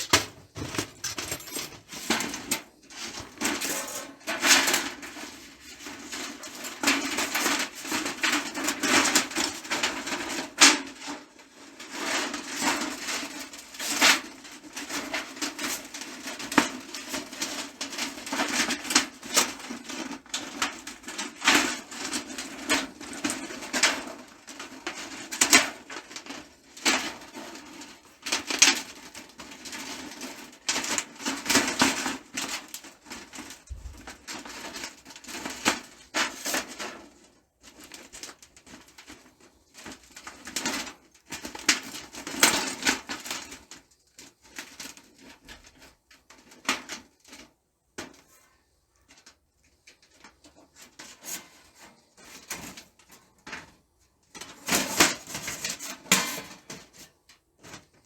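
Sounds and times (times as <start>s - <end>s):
metal stove parts clinking: 0.0s - 4.5s.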